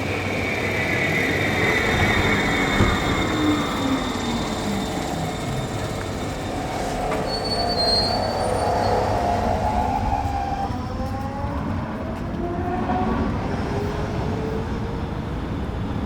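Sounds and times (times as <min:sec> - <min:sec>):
metal wheels squealing on rails: 0:00.0 - 0:12.8
train rumbling on track: 0:00.0 - 0:16.0.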